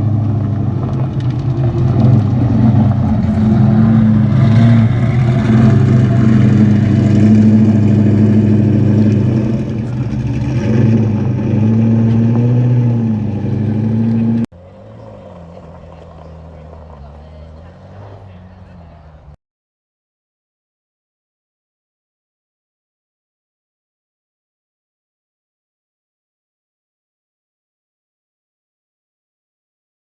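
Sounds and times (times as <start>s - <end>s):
car engines revving: 0.0s - 19.4s.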